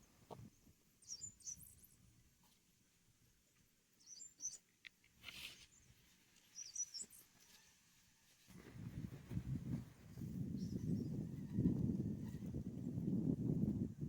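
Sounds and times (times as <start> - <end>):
faint bird chirps: 0.0 - 2.1, 4.0 - 4.7, 5.4 - 7.6.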